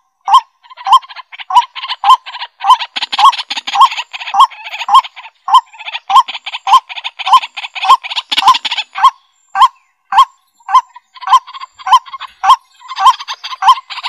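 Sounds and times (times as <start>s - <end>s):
bird calling with rattle: 0.0s - 14.0s.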